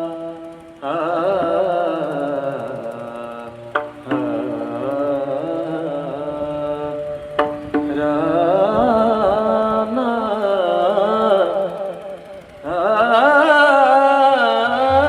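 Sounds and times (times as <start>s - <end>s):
devotional singing: 0.0s - 15.0s
held accompanying notes: 0.0s - 15.0s
sharp percussion strikes: 0.4s - 12.9s, 13.5s - 15.0s.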